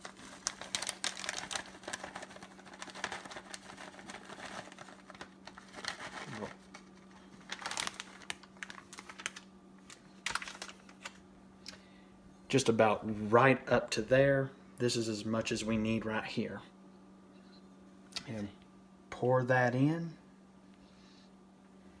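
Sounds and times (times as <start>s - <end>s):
cheese poured into plastic cup: 0.0s - 6.6s.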